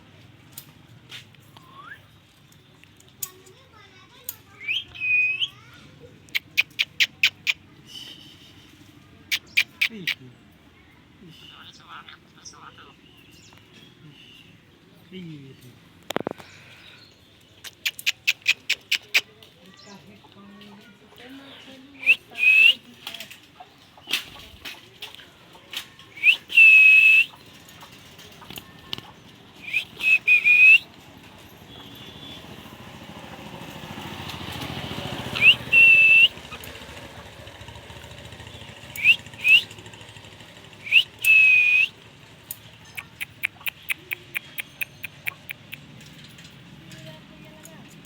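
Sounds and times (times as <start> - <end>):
parrot whistling: 4.6 - 5.6, 22.0 - 22.8, 26.2 - 27.4, 29.6 - 30.9, 35.3 - 36.6, 39.0 - 39.7, 40.8 - 41.9
fast short ticks: 40.7 - 46.2.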